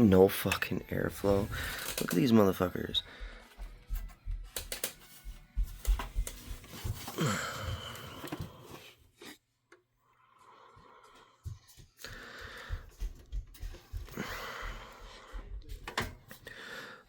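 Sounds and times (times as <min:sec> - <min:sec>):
handling knocks and rustling: 0:04.9 - 0:09.4.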